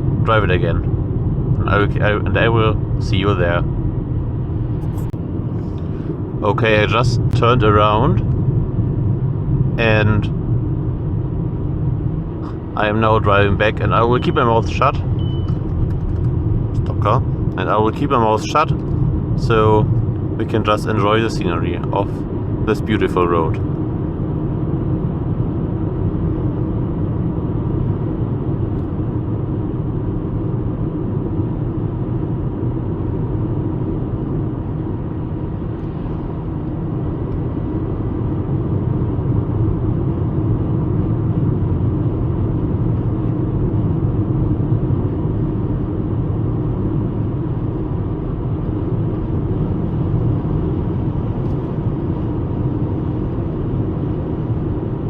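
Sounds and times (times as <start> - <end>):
car engine rumble: 0.0 - 55.0.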